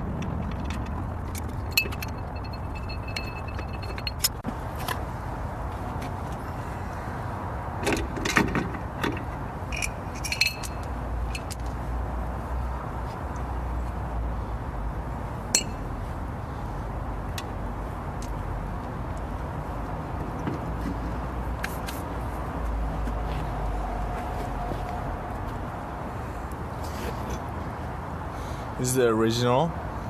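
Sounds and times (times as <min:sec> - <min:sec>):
steady low rumble: 0:00.0 - 0:07.6
clicks and light metal clinks: 0:00.4 - 0:04.4, 0:09.7 - 0:11.7.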